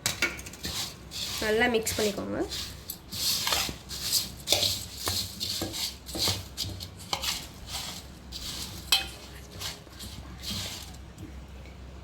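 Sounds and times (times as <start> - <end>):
spoon stirring food in pan: 0.0 - 11.5.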